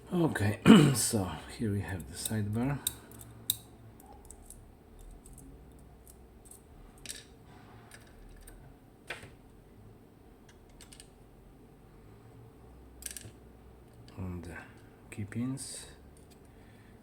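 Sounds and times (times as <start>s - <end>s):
metallic clicks of lock parts: 2.0s - 7.3s, 10.5s - 11.1s.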